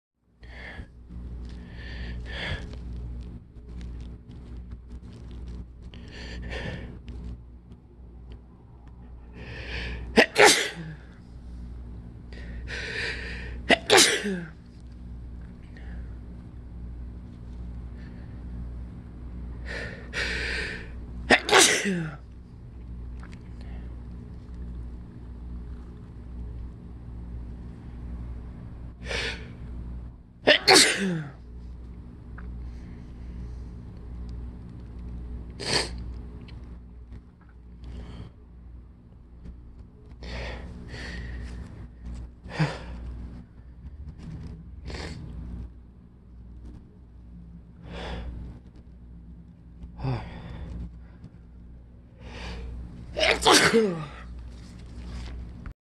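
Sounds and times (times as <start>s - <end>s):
person sneezing: 10.1s - 11.0s, 13.7s - 14.6s, 21.3s - 22.2s, 30.5s - 31.4s, 53.2s - 54.3s.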